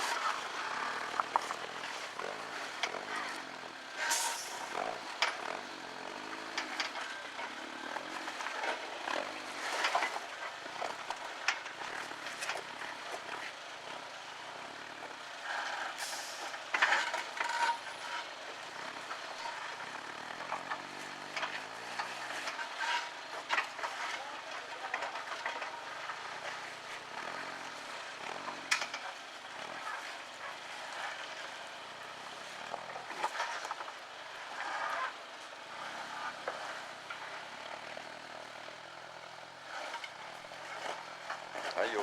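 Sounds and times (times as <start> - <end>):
vehicle scraping on rock: 0.0 - 3.4, 20.7 - 24.2, 33.0 - 33.8
car engine at low revs: 0.0 - 3.9.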